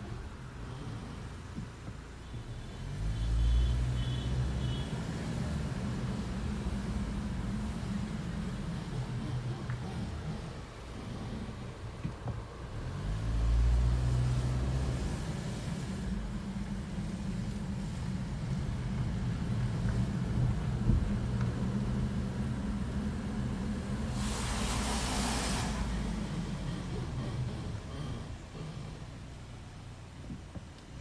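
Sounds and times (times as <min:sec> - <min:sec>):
car engine and road rumble: 0:00.0 - 0:31.0
brief rushing hiss: 0:24.1 - 0:26.3.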